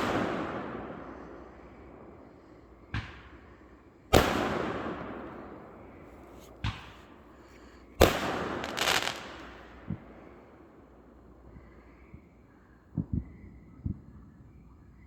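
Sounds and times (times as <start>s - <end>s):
fireworks launch thumps: 6.2s - 7.1s
fireworks crackling: 8.0s - 10.2s
fireworks shell booming: 8.0s - 10.3s.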